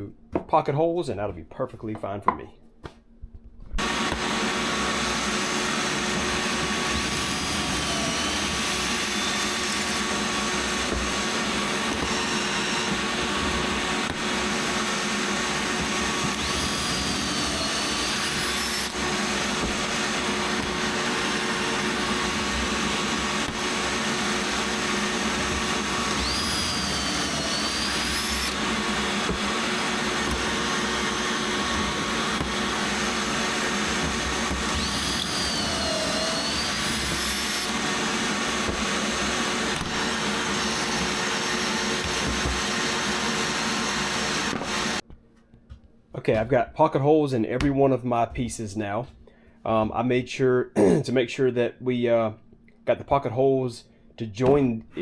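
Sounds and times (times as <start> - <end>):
drill motor running: 3.8 - 45.0.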